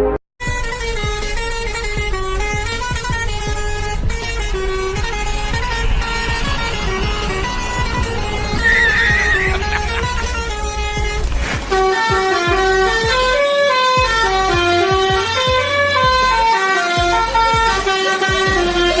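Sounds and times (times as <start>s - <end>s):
truck musical horn playing a tune: 0.0s - 19.0s
low repeating thump: 0.4s - 11.7s.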